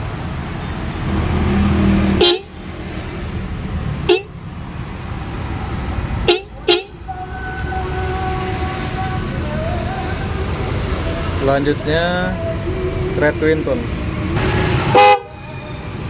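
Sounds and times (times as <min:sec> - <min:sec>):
street noise: 0:00.0 - 0:16.0
motorcycle horn toots: 0:02.2 - 0:02.6, 0:04.1 - 0:04.4, 0:06.2 - 0:07.0, 0:14.9 - 0:15.5.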